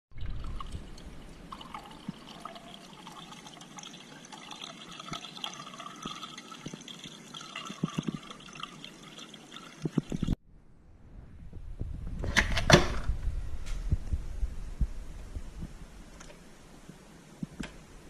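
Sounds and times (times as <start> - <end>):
water gurgling and trickling: 0.1 - 10.4.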